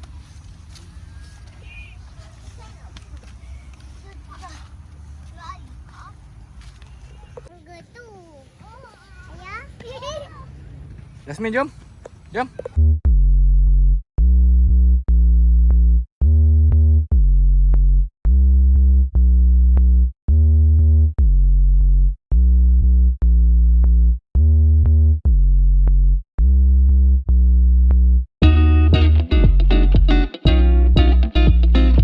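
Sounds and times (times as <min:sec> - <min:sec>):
deep synthesizer bass notes: 0:12.8 - 0:32.0.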